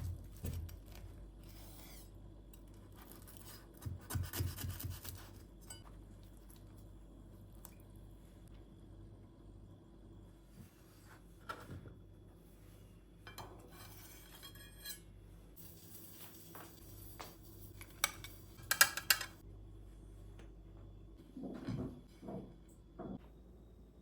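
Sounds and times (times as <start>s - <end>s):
dishes and cutlery clinking: 17.2s - 19.4s.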